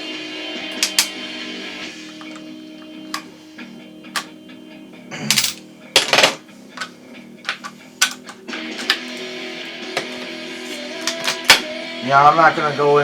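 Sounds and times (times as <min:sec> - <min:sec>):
guitar music: 0:00.0 - 0:13.0
gun parts clicking and knocking: 0:00.7 - 0:01.2, 0:02.1 - 0:02.5, 0:04.1 - 0:04.4, 0:05.3 - 0:09.2, 0:11.0 - 0:11.7.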